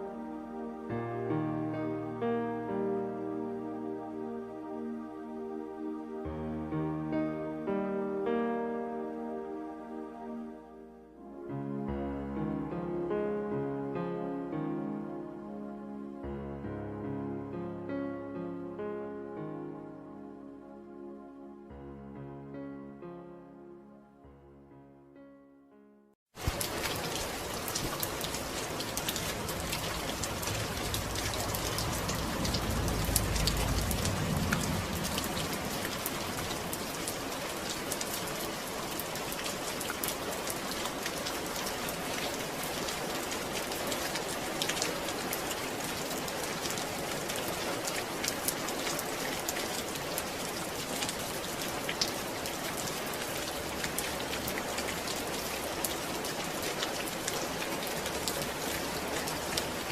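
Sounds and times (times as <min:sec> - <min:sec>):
steady rain falling: 0:00.0 - 0:16.2, 0:26.3 - 0:59.9
low rumble: 0:29.6 - 0:36.6.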